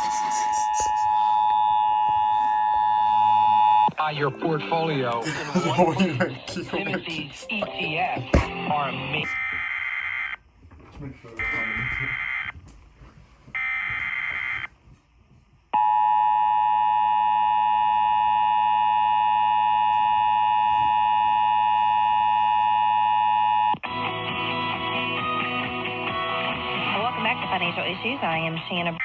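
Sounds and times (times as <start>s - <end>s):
radio music: 0.0s - 1.5s, 3.8s - 9.5s.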